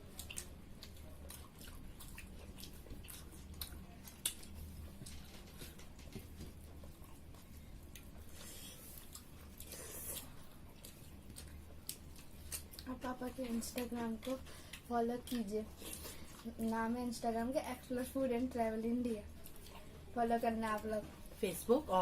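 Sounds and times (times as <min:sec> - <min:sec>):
person chewing: 0:00.0 - 0:16.8, 0:19.3 - 0:20.0
low steady hum: 0:00.0 - 0:22.0.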